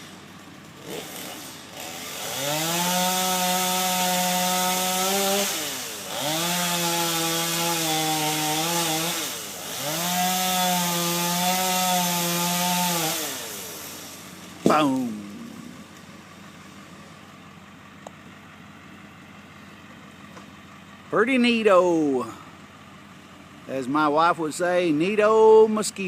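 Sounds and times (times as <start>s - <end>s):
chainsaw cutting tree: 0.0s - 17.4s.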